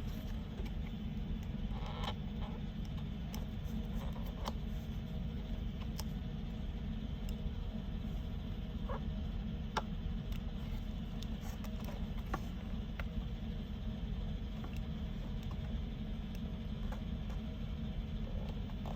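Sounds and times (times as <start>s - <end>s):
low hum: 0.0s - 18.9s.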